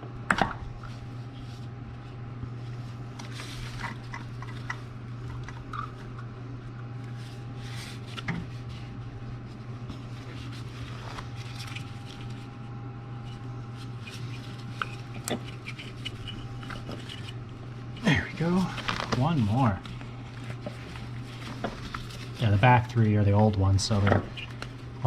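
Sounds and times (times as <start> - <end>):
steady low hum: 0.0 - 25.0
wires clicking and rubbing: 13.2 - 23.0.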